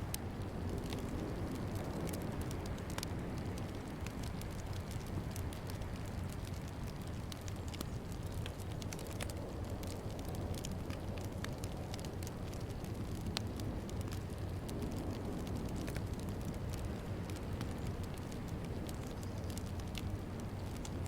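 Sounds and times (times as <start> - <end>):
fire crackling and popping: 0.0 - 21.0.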